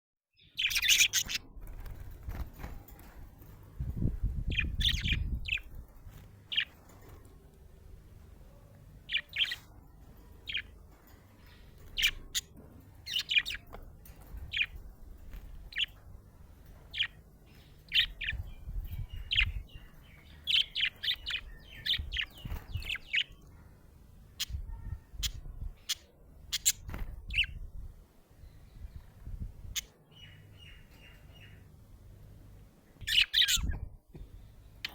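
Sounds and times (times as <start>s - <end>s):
budgerigar chirping: 33.0s - 33.8s.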